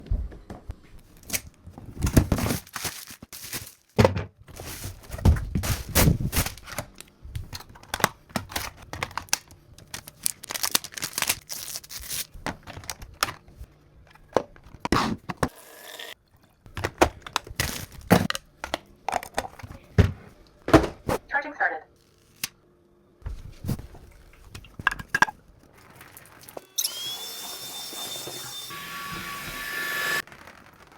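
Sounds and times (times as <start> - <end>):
packaging tearing and crinkling: 1.2 - 4.0, 4.6 - 13.5, 17.1 - 18.4, 30.2 - 30.9.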